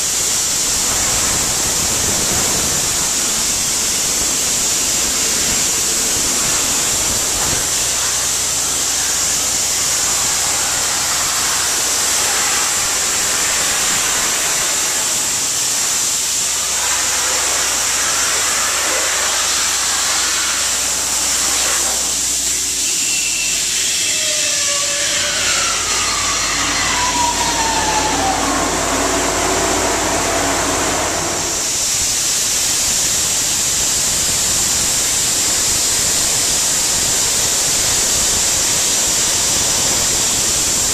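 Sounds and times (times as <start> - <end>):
loud steady air hiss: 0.0 - 40.9
whine sliding down in pitch: 22.8 - 31.8
low hum: 24.7 - 31.8.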